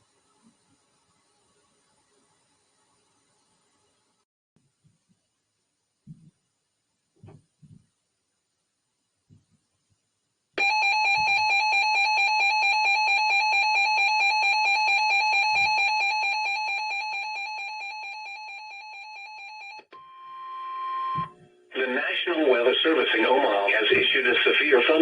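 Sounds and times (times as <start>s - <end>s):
steady warning alarm tone: 10.6s - 23.6s.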